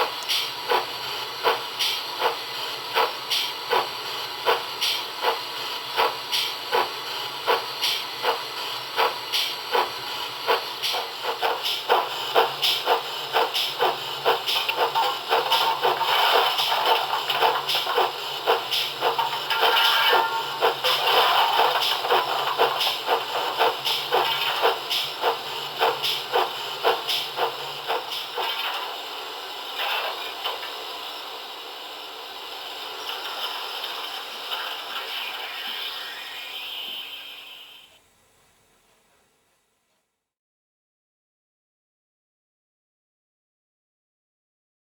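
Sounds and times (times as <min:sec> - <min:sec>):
steam locomotive exhaust chuffs: 0:00.0 - 0:37.9
steady steam hiss: 0:00.0 - 0:38.0.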